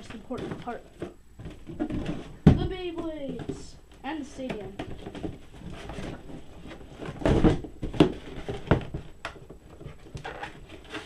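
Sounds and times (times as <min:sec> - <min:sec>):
packaging rustling: 0:04.8 - 0:11.0.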